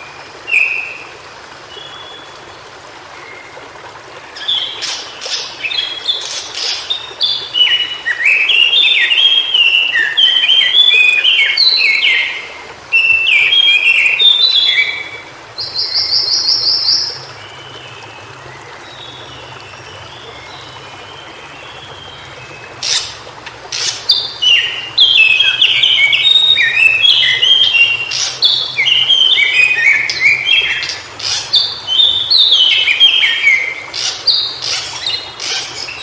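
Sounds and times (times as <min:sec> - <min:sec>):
bird warbling song: 0:04.3 - 0:18.0, 0:18.8 - 0:36.0
high bird trill: 0:26.1 - 0:36.0.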